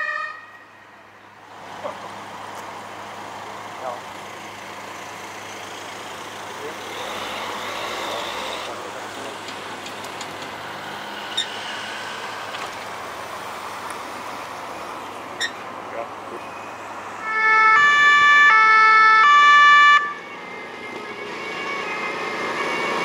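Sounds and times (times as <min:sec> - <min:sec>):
two-tone siren: 0:00.0 - 0:00.8, 0:16.4 - 0:23.0
street and engine noise: 0:00.0 - 0:23.0.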